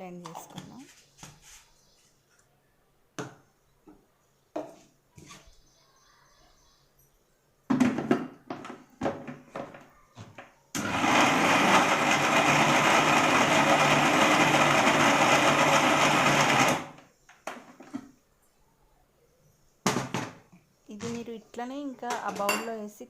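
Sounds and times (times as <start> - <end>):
electric blender running: 10.8 - 17.0.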